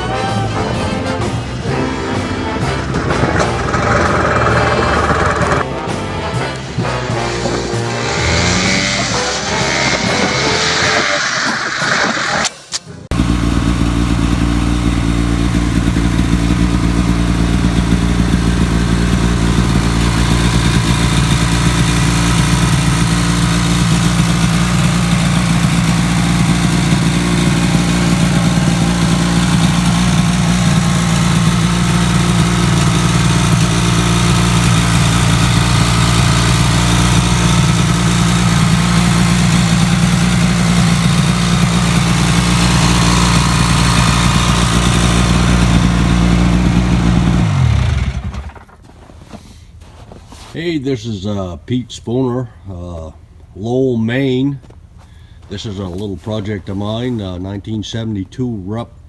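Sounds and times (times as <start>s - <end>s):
snowmobile engine running: 2.5s - 5.9s, 6.6s - 12.2s, 13.1s - 48.8s.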